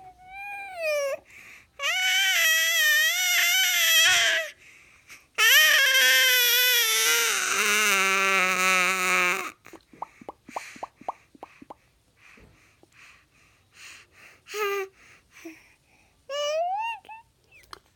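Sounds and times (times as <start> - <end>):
baby vocalising: 16.3 - 17.7.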